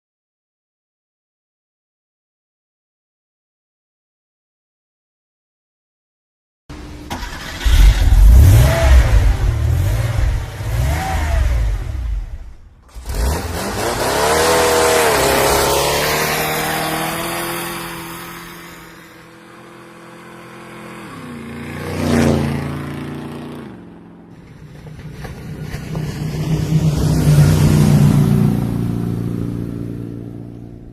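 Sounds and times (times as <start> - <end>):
vehicle engine revving and passing: 7.2 - 30.9.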